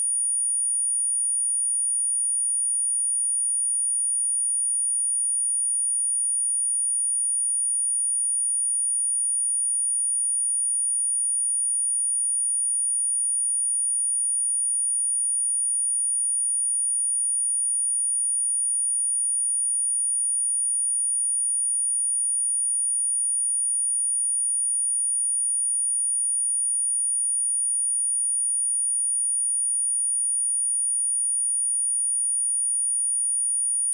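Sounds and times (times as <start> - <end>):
high-pitched sine test tone: 28.3 - 33.9.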